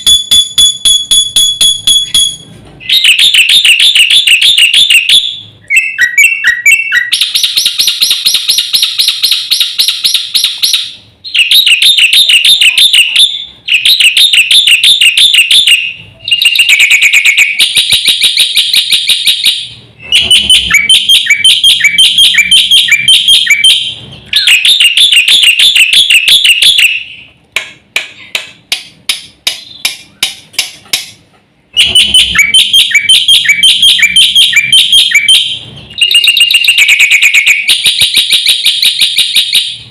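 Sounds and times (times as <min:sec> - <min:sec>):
bird chattering song: 0:00.0 - 0:27.4, 0:29.4 - 0:30.4, 0:31.8 - 0:39.8
sharp staccato bird notes: 0:19.5 - 0:27.3.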